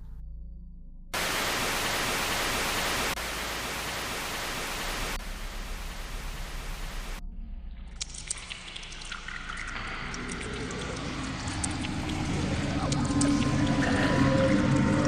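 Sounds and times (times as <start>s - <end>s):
static hiss: 1.2s - 7.2s.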